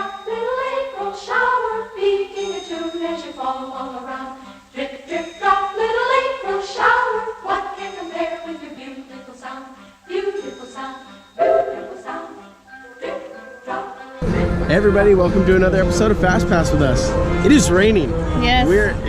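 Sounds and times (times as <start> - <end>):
voices singing: 0.0 - 19.0
pulsing low note: 14.2 - 19.0.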